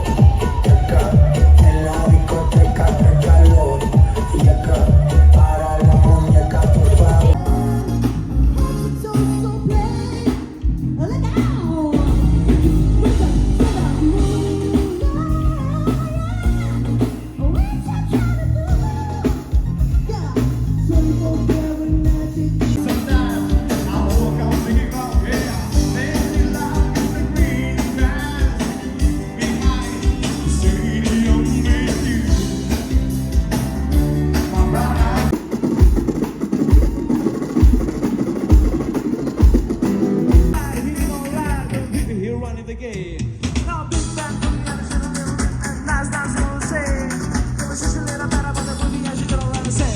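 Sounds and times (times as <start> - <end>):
person singing: 0.0 - 35.4
bass guitar: 0.0 - 36.0, 39.8 - 49.9
guitar: 0.0 - 42.9, 43.7 - 49.9
drums: 0.0 - 49.9.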